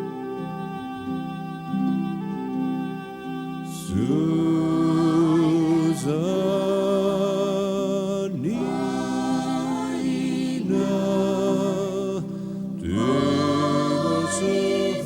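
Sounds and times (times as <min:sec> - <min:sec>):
women's choir singing carol: 0:03.8 - 0:15.0.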